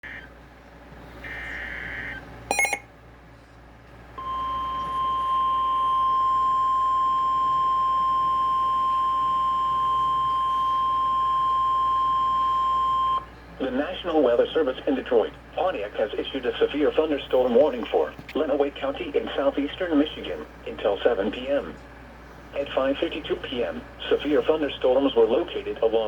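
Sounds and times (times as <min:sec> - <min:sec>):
steady warning alarm tone: 0:01.3 - 0:02.8, 0:04.2 - 0:13.2
digital alert data burst: 0:02.5 - 0:02.8.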